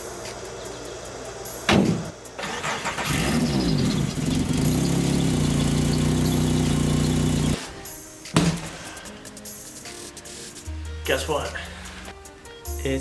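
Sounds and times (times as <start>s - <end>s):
car engine starting and idling: 1.7s - 8.0s.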